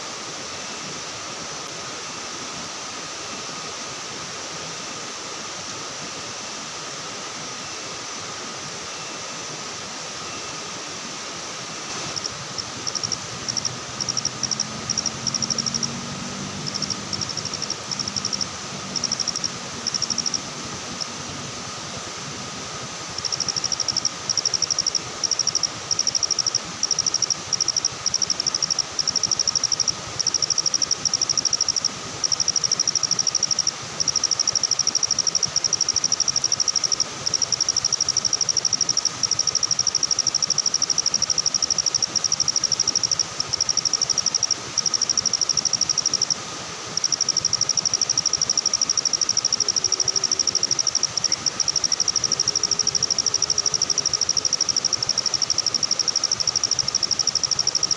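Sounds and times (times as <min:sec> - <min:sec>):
steady whine of night insects: 0:00.0 - 0:57.9
insect trilling: 0:11.8 - 0:57.9.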